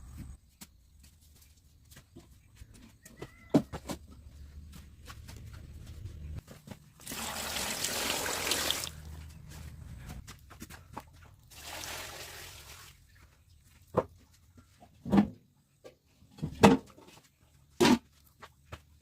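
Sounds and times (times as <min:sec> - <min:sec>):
water pouring: 0:07.0 - 0:09.1, 0:11.5 - 0:13.0.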